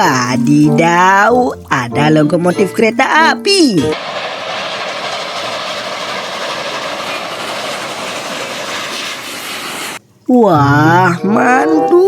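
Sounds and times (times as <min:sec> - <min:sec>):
hiss of water spraying: 0:04.0 - 0:10.0.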